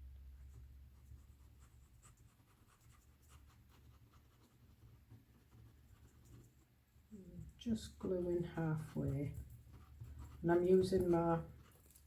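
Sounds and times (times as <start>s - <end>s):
low steady hum: 0.0s - 2.8s
paper scratching and ticking: 0.4s - 12.0s.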